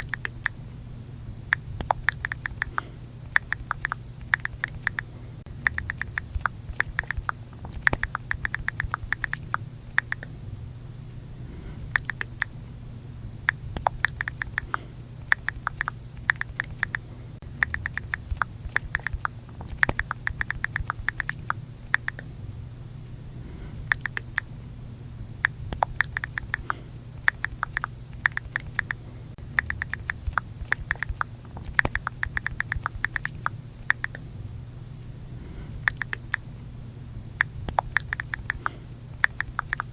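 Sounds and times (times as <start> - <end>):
phone keyboard typing clicks: 0.0 - 0.6, 1.8 - 5.0, 5.6 - 10.3, 12.0 - 12.5, 13.8 - 17.0, 17.6 - 22.2, 23.9 - 24.4, 25.7 - 29.0, 29.6 - 34.2, 35.9 - 36.4, 37.7 - 39.9
faint low hum: 0.0 - 39.9.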